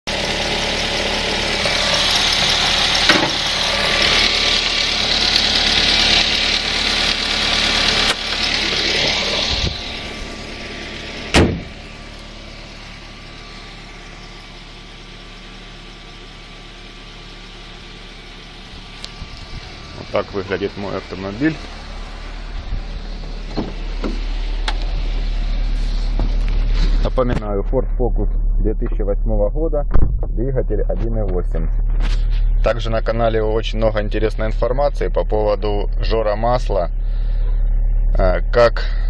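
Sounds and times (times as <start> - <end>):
car engine idling: 0.0 - 39.0
sharp knock: 11.3 - 11.7, 29.9 - 30.4.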